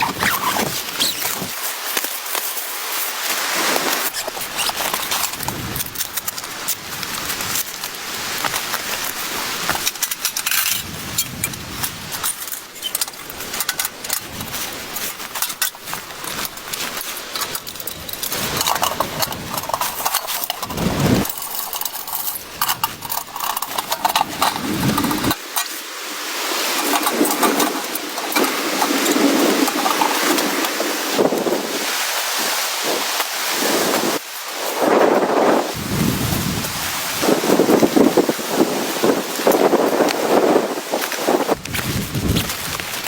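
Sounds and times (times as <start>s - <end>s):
handling noise rustling: 0.0s - 2.6s, 3.6s - 25.8s, 26.5s - 31.4s
rapid clicks and clinks: 4.0s - 25.7s, 26.7s - 30.8s.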